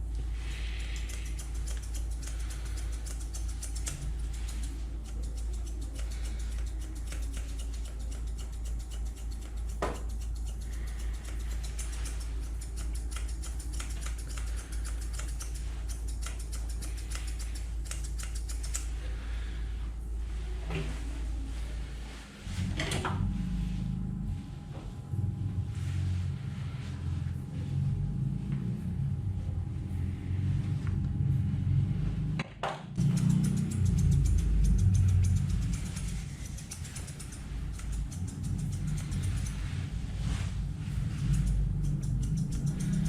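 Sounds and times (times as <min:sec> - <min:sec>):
steady low hum: 0:00.0 - 0:43.0
scissors snipping fur: 0:00.3 - 0:19.0, 0:33.0 - 0:43.0.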